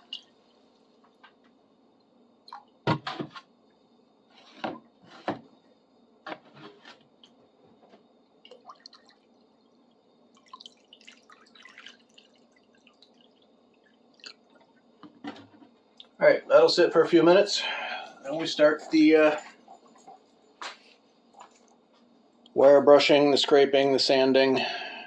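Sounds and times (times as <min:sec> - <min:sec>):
water dripping and sloshing: 0:00.0 - 0:01.2, 0:08.2 - 0:16.2
water splashing: 0:10.3 - 0:14.8.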